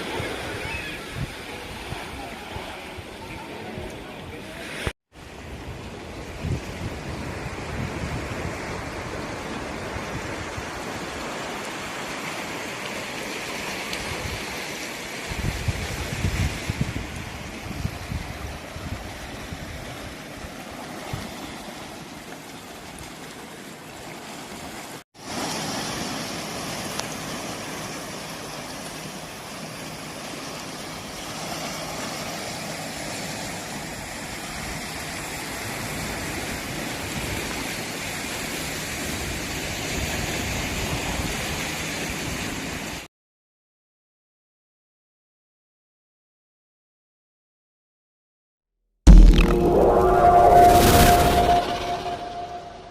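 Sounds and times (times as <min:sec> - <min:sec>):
rushing water: 0:00.0 - 0:40.3
rushing wind: 0:15.3 - 0:19.9, 0:49.1 - 0:52.9.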